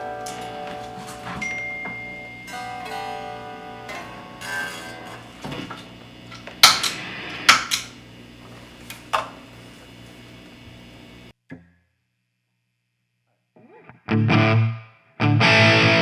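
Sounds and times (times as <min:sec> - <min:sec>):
sharp clanks: 0:00.0 - 0:10.6
electric guitar notes: 0:00.0 - 0:11.3, 0:14.1 - 0:16.0
steady amp hum: 0:00.0 - 0:11.3.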